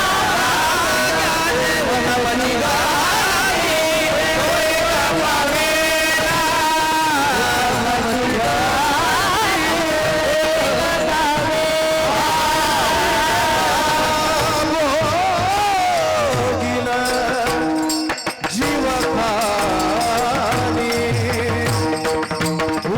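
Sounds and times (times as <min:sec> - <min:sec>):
musical accompaniment: 0:05.0 - 0:22.9.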